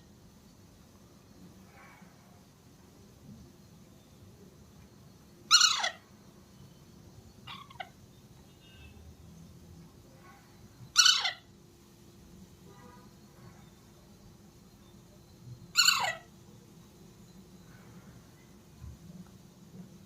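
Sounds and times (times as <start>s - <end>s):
parakeet squawks: 5.5s - 6.0s, 7.5s - 8.0s, 10.9s - 11.5s, 15.7s - 16.3s.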